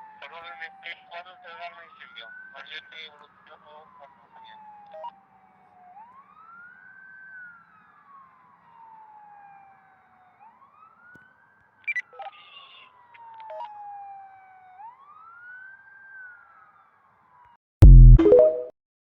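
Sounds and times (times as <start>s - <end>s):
fire engine siren wailing: 0.0s - 17.5s
short high beep: 17.8s - 18.7s.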